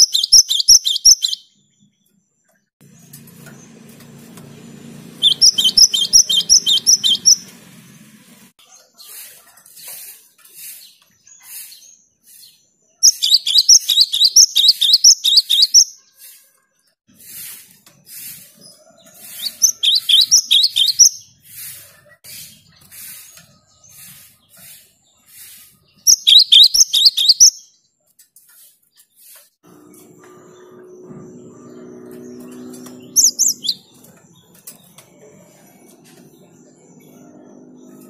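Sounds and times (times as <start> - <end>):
bird singing rapid high chirps: 0.0 - 2.2, 4.4 - 8.1, 10.6 - 16.3, 18.8 - 21.7, 22.3 - 27.9, 30.3 - 35.0.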